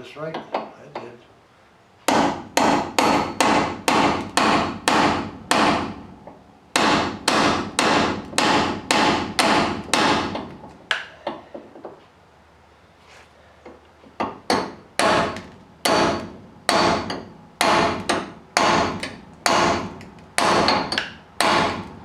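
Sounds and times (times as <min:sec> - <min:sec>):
hammer striking metal hinge: 0:02.1 - 0:05.9, 0:06.8 - 0:11.1, 0:14.2 - 0:21.9.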